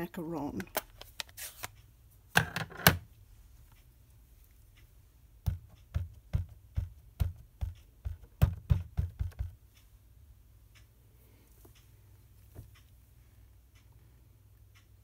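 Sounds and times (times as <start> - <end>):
stamp tapping on ink pad: 5.4 - 9.6.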